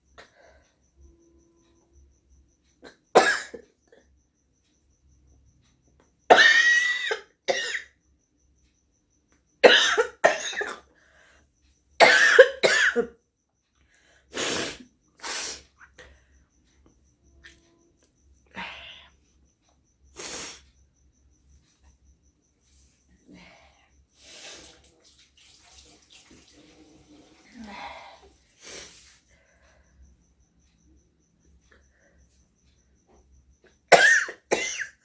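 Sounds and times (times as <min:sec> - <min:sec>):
woman coughing: 0:02.8 - 0:03.6, 0:06.3 - 0:07.9, 0:09.6 - 0:10.8, 0:12.0 - 0:13.2, 0:33.9 - 0:35.0.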